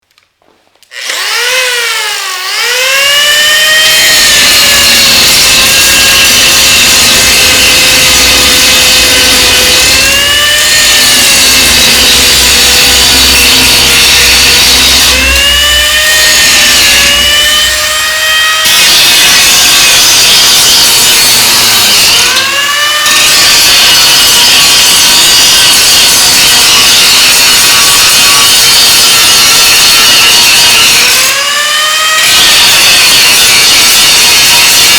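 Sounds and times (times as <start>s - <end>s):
angle grinder whining: 0.9s - 34.9s
grinding hiss: 4.0s - 30.8s.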